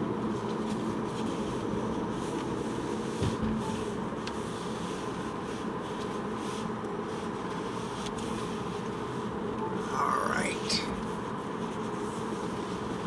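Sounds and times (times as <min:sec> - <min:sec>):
car road and engine noise: 0:00.0 - 0:13.0.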